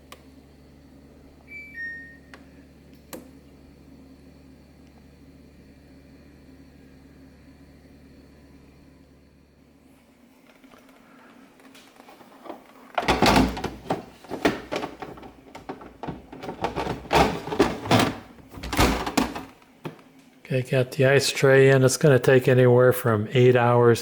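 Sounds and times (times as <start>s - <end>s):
plastic ice bucket clunking and rattling: 12.2s - 20.0s.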